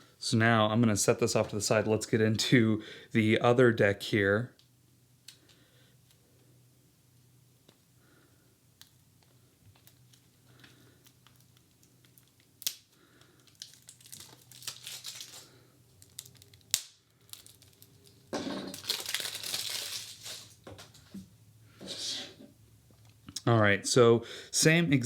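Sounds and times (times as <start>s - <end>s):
packaging crinkling: 9.2s - 21.0s.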